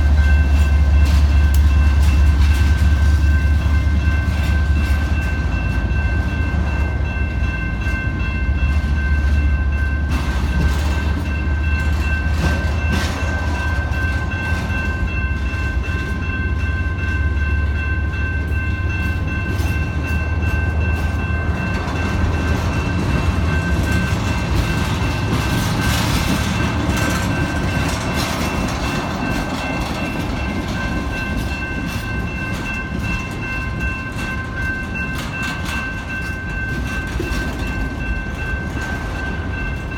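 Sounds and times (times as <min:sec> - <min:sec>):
freight train rumble: 0:00.0 - 0:39.9
train wheels clattering on rails: 0:00.0 - 0:39.9.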